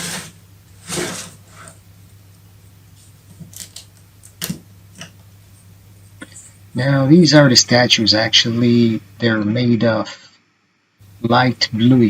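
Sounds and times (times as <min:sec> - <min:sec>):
plastic rustle: 0:00.0 - 0:01.8.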